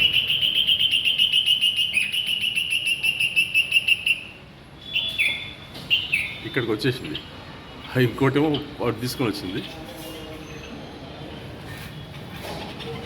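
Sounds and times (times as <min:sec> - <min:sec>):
bird alarm chirps: 0:00.0 - 0:07.3.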